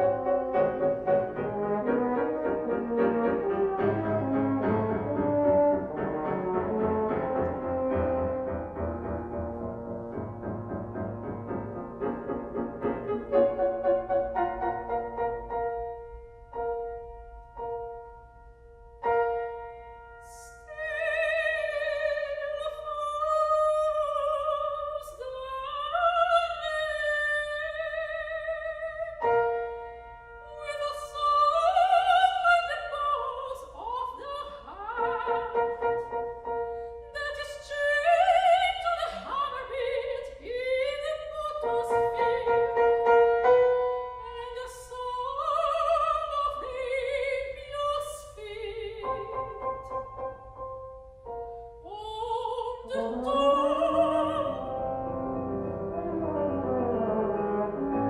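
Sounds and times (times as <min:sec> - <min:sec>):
piano accompaniment: 0:00.0 - 0:26.9, 0:34.8 - 0:47.2, 0:49.0 - 0:58.0
soprano singing operatically: 0:20.2 - 0:29.4, 0:30.4 - 0:50.3, 0:51.8 - 0:58.0.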